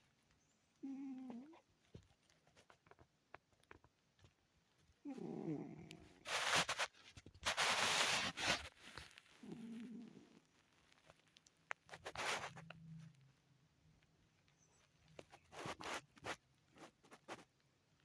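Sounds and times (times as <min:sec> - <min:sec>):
cat snoring: 0:00.8 - 0:01.6, 0:05.1 - 0:06.5, 0:09.4 - 0:10.4.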